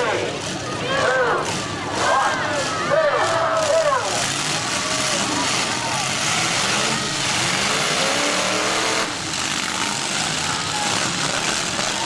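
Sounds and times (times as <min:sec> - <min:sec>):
car engines revving: 0:00.0 - 0:12.0.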